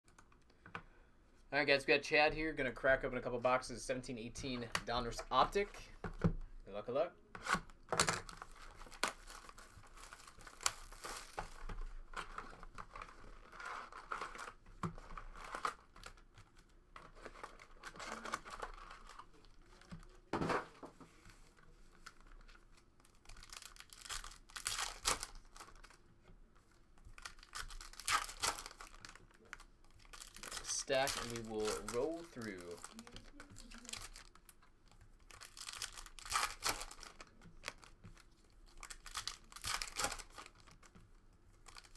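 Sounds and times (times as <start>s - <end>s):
plastic wrapping tearing and crinkling: 7.4s - 20.7s, 21.5s - 26.1s, 27.0s - 41.9s.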